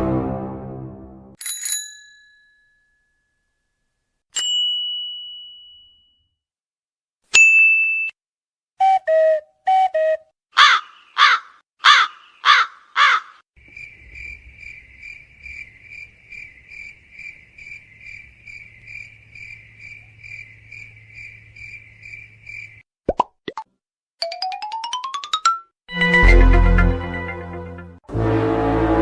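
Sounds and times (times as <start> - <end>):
crow cawing: 10.6 - 13.4
cricket chirping: 13.6 - 22.8.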